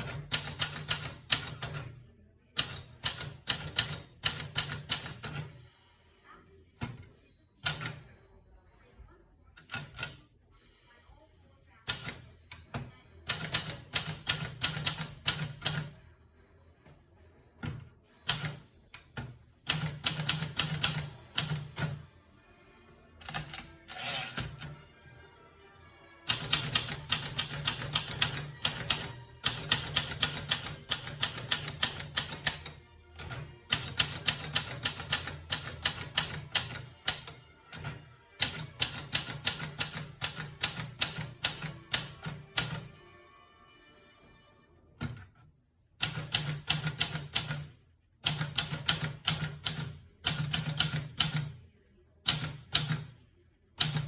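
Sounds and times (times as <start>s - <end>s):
typewriter key strikes: 0.0s - 1.9s, 2.6s - 5.5s, 11.9s - 15.9s, 17.7s - 22.0s, 26.3s - 42.8s, 46.0s - 51.5s, 52.3s - 53.1s, 53.8s - 54.0s.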